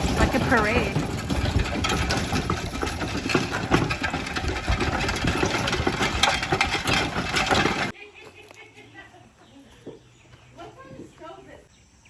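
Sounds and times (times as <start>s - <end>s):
loud mechanical clatter: 0.0s - 7.9s.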